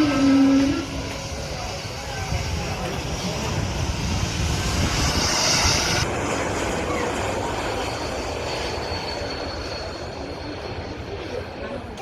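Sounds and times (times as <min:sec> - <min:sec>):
thin high whine: 0:00.0 - 0:11.4
jet engines roaring: 0:00.0 - 0:12.0.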